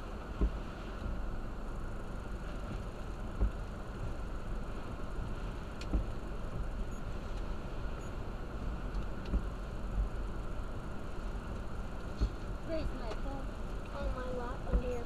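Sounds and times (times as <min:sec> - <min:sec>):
low thumps: 0:00.0 - 0:01.2, 0:02.6 - 0:07.0
storm wind and rain around car: 0:00.0 - 0:15.0.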